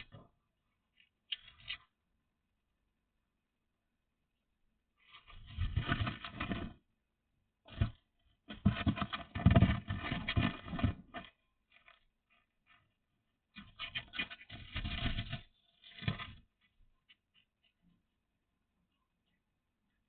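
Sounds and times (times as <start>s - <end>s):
scratching and scraping: 0.0s - 2.0s, 5.0s - 6.9s, 7.7s - 18.1s.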